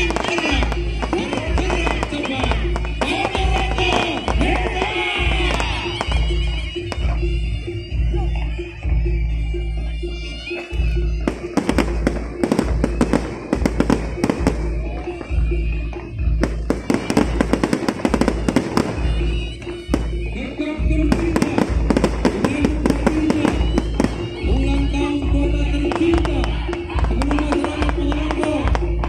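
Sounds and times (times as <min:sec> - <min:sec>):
fireworks cracking and popping: 0:00.0 - 0:07.2, 0:11.2 - 0:15.2, 0:16.4 - 0:20.3, 0:21.0 - 0:24.5, 0:25.9 - 0:29.0
music with heavy bass beat: 0:00.0 - 0:29.0.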